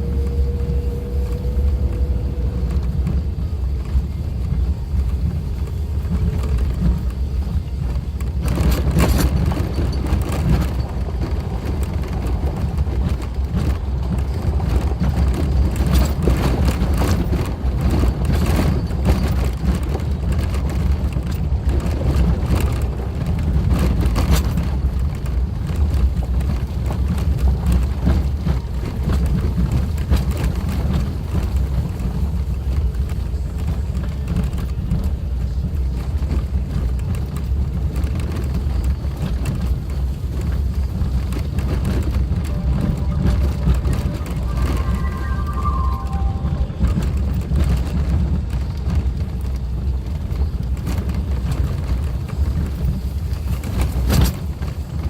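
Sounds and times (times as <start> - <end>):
crackling and rattling: 0.0 - 45.6
engine and tyre rumble: 0.0 - 55.0.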